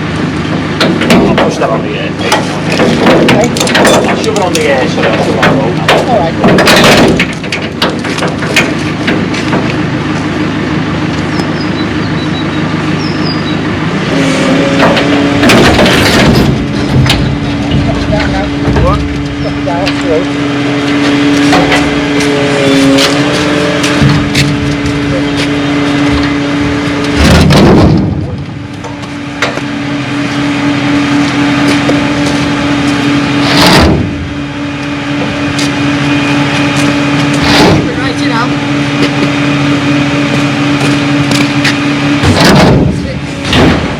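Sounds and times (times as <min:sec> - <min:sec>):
vehicle engine running: 0:00.0 - 0:43.9
knocks and clatters: 0:00.4 - 0:09.8, 0:14.5 - 0:26.4, 0:27.0 - 0:29.7.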